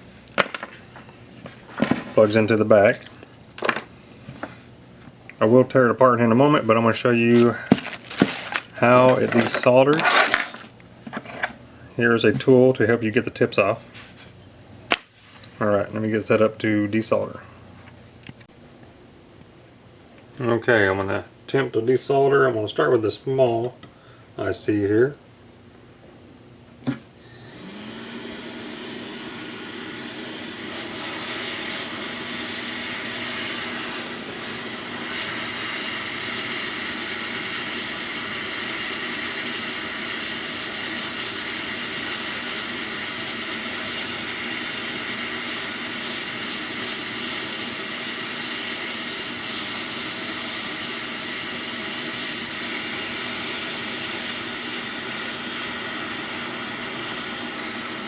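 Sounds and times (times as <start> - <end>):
hot air gun blowing with fan hum: 26.8 - 58.0.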